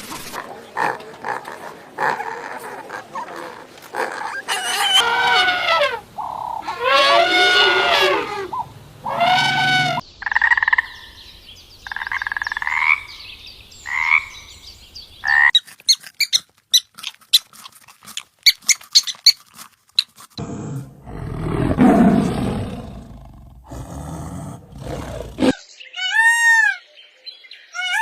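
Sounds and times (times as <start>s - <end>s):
animal clicks and chirps: 15.2s - 20.3s
low rough animal growl: 20.4s - 25.6s.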